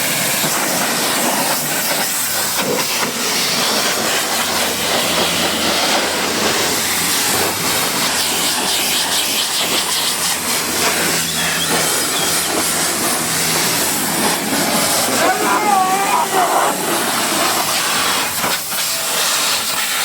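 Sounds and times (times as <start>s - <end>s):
pressure washer spraying water: 0.0s - 20.0s
washer motor humming: 9.3s - 19.3s.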